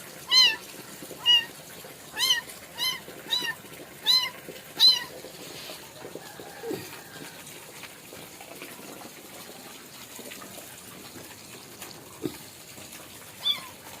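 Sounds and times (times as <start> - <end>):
kitten mewing: 0.3 - 0.6, 1.2 - 1.5, 2.2 - 5.1.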